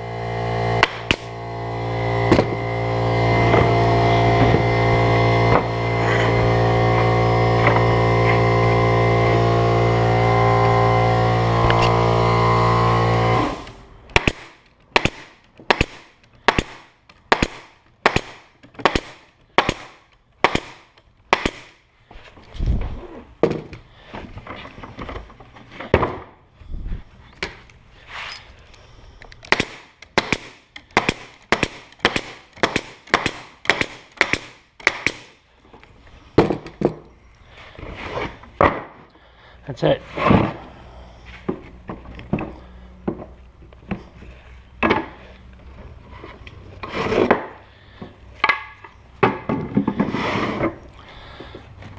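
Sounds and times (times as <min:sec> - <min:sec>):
air compressor motor running: 0:00.0 - 0:14.6
pneumatic nailer shots: 0:00.0 - 0:21.9, 0:29.4 - 0:35.5.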